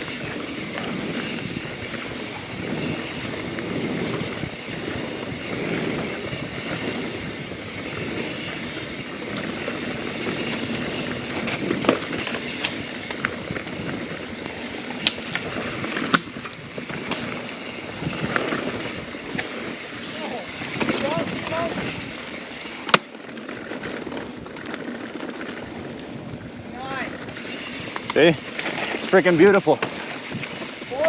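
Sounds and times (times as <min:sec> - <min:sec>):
wind on microphone: 0:00.0 - 0:19.7, 0:20.6 - 0:22.2
bike tyres rumbling on dirt trail: 0:00.0 - 0:31.0.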